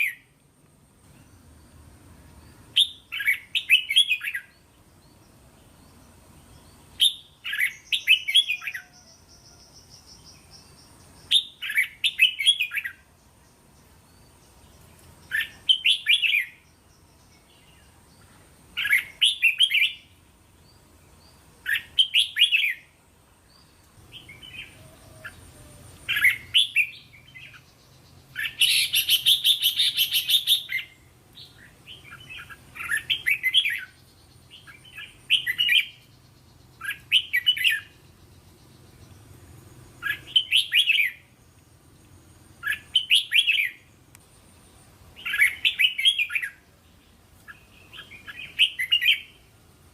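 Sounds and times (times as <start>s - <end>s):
bird whistled song phrases: 2.8s - 4.6s, 7.0s - 9.5s, 11.3s - 13.0s, 18.8s - 20.1s, 21.7s - 22.9s, 26.1s - 27.6s, 28.3s - 34.0s, 40.0s - 41.3s, 42.6s - 43.9s, 45.2s - 46.6s, 47.5s - 49.4s.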